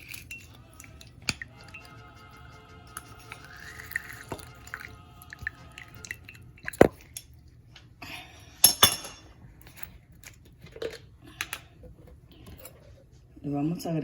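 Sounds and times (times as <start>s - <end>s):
lemon juice dripping into tea: 3.0s - 7.4s.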